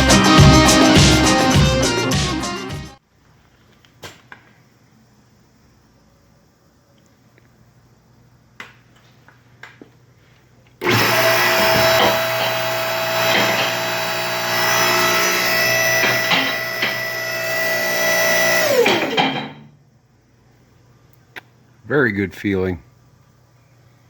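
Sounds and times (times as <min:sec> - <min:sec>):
car lift motor whining: 0:10.8 - 0:19.7.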